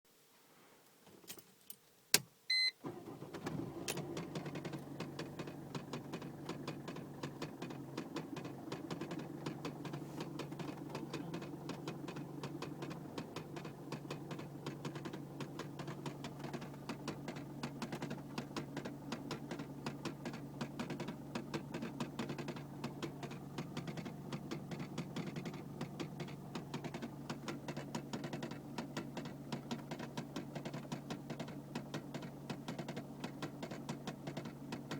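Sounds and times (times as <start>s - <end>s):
short beep: 2.5s - 2.8s
diesel engine starting and idling: 2.5s - 34.9s
rapid ticking from dashboard: 3.5s - 34.9s.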